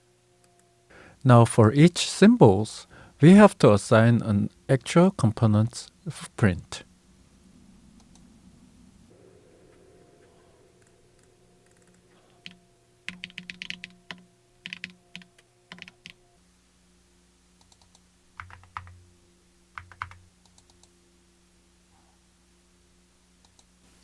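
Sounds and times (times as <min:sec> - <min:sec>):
faint steady hum: 0:00.0 - 0:24.0
typing on computer keyboard: 0:11.6 - 0:16.2, 0:18.4 - 0:19.0, 0:19.8 - 0:20.2.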